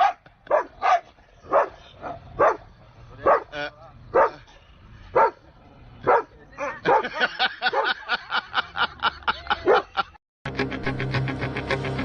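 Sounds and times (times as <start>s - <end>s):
dog yelping and barking: 6.1s - 7.9s
music: 10.5s - 12.0s.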